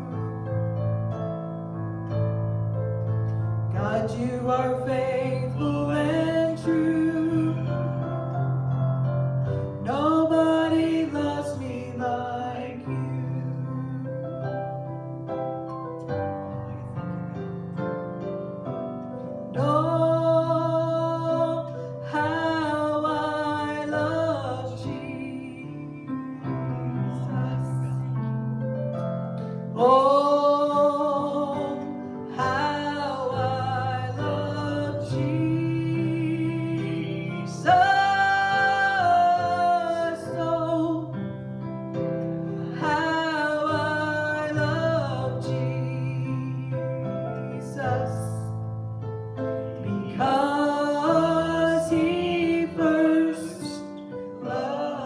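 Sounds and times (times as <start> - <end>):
woman singing: 3.8 - 8.2, 9.8 - 14.2, 19.5 - 28.3, 29.8 - 41.2, 42.6 - 48.6, 49.8 - 55.0.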